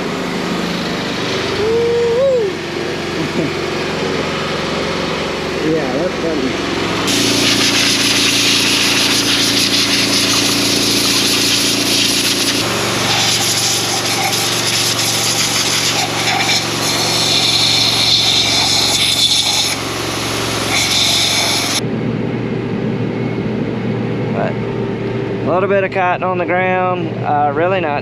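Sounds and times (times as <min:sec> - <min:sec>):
engine drone: 0:00.0 - 0:28.0
hiss of air and machinery: 0:07.1 - 0:21.8.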